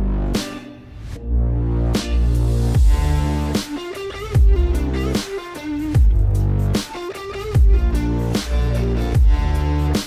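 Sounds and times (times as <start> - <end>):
electronic music with guitar: 0.0 - 10.0
heavy bass hits: 1.2 - 3.7, 4.4 - 5.2, 6.0 - 6.8, 7.6 - 10.0.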